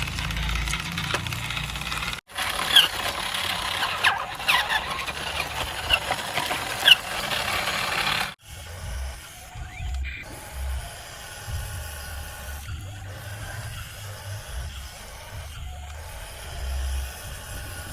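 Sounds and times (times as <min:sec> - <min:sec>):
short squeaks: 0:00.0 - 0:08.4
toy electric motors whirring: 0:00.0 - 0:17.9.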